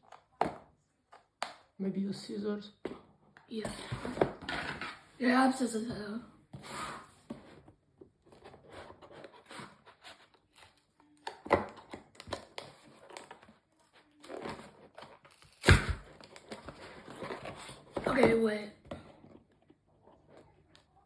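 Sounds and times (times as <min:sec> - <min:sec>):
packaging rustling and tearing: 0:11.8 - 0:17.9.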